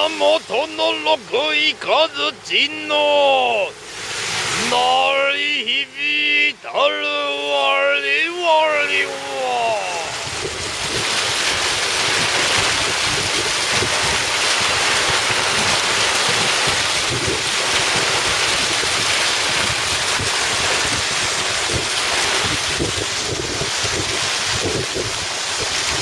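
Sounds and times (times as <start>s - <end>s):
wind and heavy rain: 0.0s - 26.0s
wind buffeting microphone: 9.8s - 26.0s.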